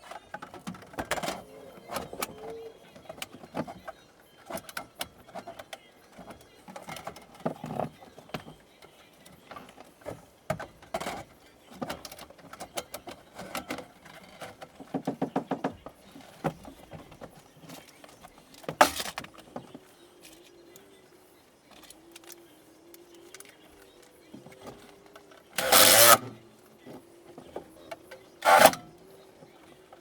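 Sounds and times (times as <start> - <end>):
faint wavering hum: 1.1 - 4.3
tools knocking and clicking: 11.8 - 17.1.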